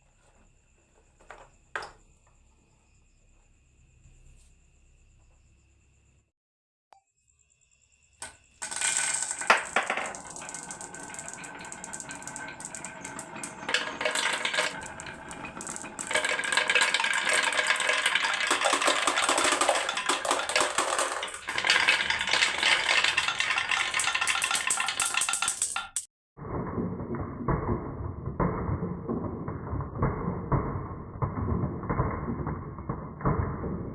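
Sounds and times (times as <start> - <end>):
marbles clattering down track: 8.2 - 33.9.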